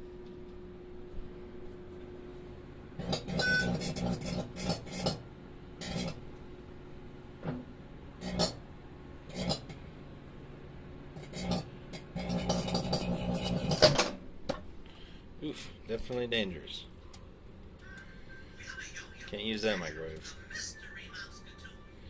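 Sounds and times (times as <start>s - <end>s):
microwave oven humming: 0.0s - 22.0s.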